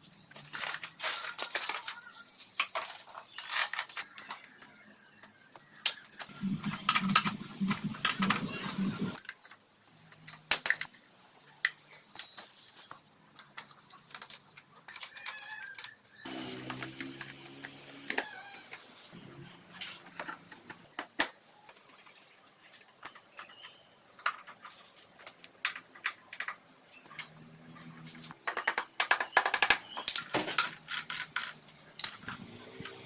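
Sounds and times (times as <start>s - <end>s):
sharp clicks and knocks: 5.9s - 10.9s
low pulsing hum: 6.3s - 9.2s.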